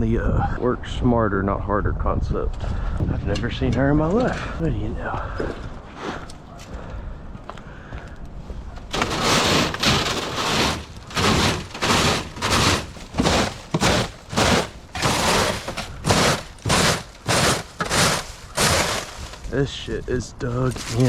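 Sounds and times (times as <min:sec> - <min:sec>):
leaf blower rushes: 0:08.9 - 0:19.5.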